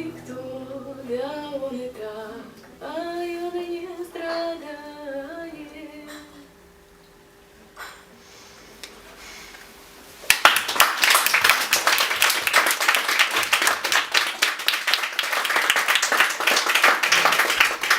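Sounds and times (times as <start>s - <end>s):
small audience applauding: 10.2s - 17.9s.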